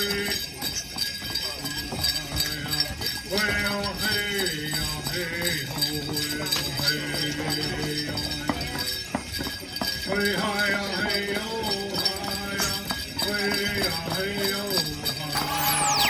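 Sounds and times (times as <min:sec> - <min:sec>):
voices singing long notes: 0:15.4 - 0:16.0.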